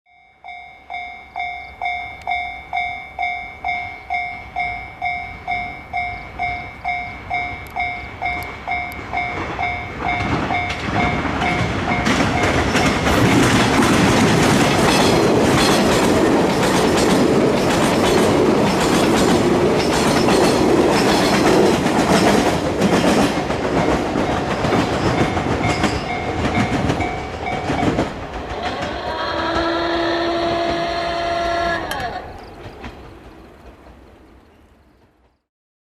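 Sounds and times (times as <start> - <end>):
level crossing warning bell ringing: 0.1 - 13.7, 23.8 - 28.1
electric train passing: 0.2 - 35.4
wheels clacking over rail joints: 3.2 - 35.4.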